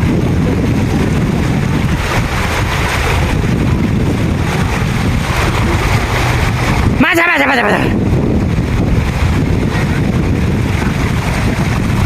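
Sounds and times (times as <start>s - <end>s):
wind buffeting microphone: 0.0s - 12.0s
stream water rushing: 0.7s - 12.0s.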